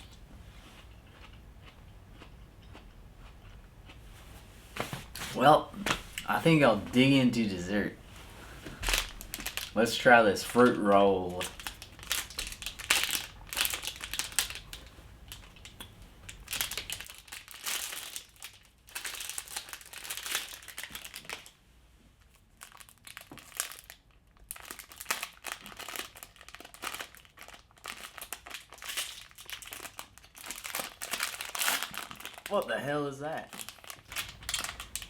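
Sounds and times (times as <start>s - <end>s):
plastic wrapper crinkling: 8.7s - 21.6s, 22.3s - 35.0s.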